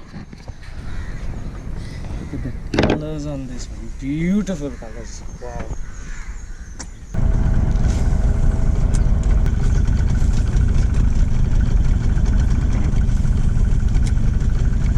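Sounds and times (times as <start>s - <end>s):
boat engine idling: 7.2s - 14.9s.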